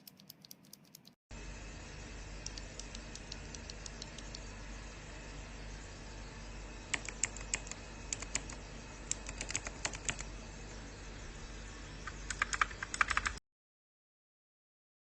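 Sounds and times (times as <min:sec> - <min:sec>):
mechanical keyboard typing: 0:00.0 - 0:01.2, 0:06.9 - 0:10.3, 0:12.1 - 0:13.4.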